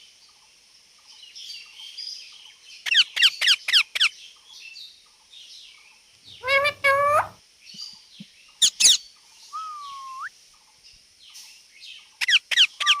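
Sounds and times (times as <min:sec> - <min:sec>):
parrot chirping and whistling: 0:06.4 - 0:07.4, 0:09.6 - 0:10.3, 0:12.6 - 0:13.0.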